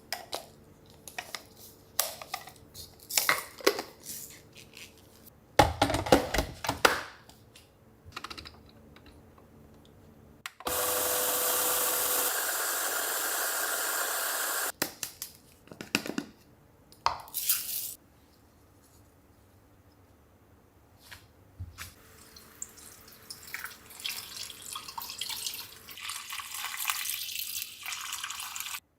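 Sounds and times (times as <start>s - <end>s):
kitchen tap running: 22.0s - 28.8s.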